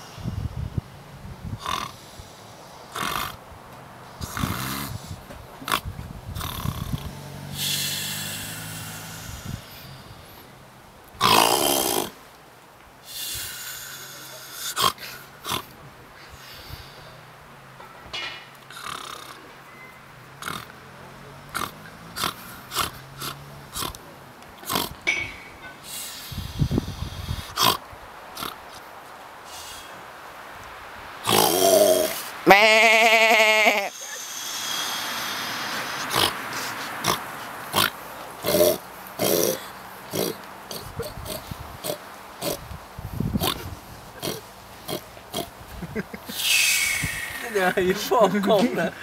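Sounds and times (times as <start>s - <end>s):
people snoring: 1.6s - 2.3s, 2.9s - 3.4s, 4.2s - 10.4s, 11.2s - 12.2s, 18.7s - 19.5s, 20.4s - 24.0s, 31.2s - 32.3s, 33.9s - 42.6s.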